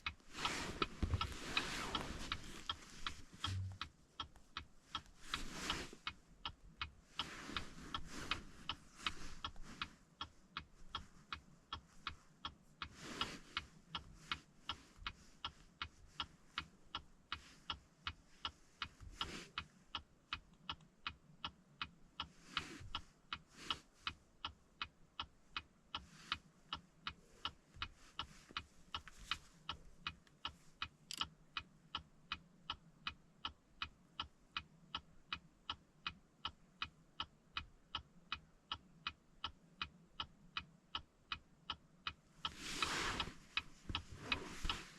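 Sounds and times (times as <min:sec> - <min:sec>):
soft handling noises: 0:00.0 - 0:20.0, 0:22.2 - 0:24.2, 0:25.4 - 0:31.2, 0:42.3 - 0:44.9
steady mechanical ticking: 0:00.0 - 0:42.6.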